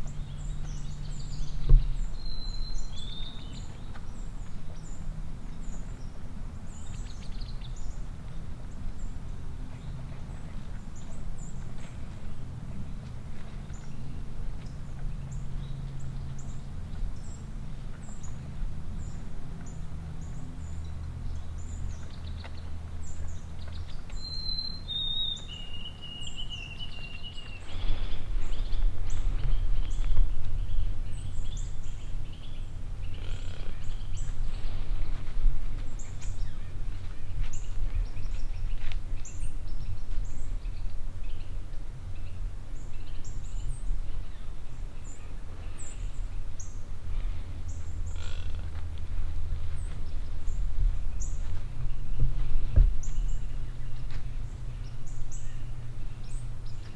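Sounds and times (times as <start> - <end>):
low rumble: 46.9 - 56.7.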